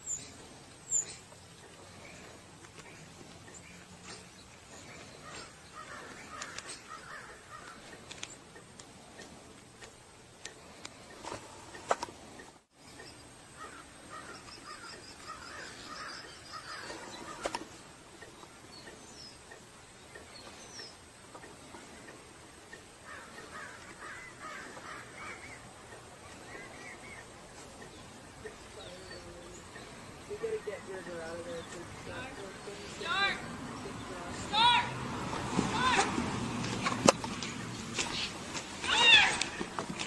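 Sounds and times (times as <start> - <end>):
faint birds calling: 0.0 - 40.0
sharp clicks: 5.9 - 13.1.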